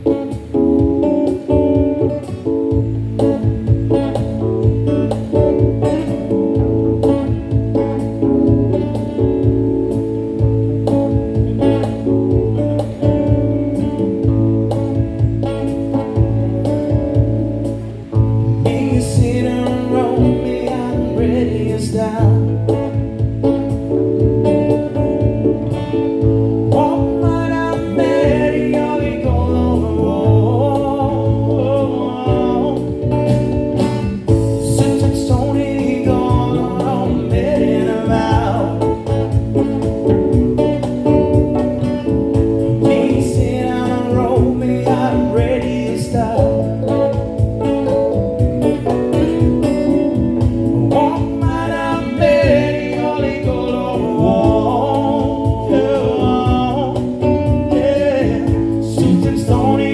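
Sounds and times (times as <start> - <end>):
guitar: 0.0 - 59.9
steady beat: 0.0 - 59.9
person singing: 18.0 - 23.4, 26.6 - 33.6, 34.2 - 40.2, 42.3 - 48.2, 50.4 - 59.9.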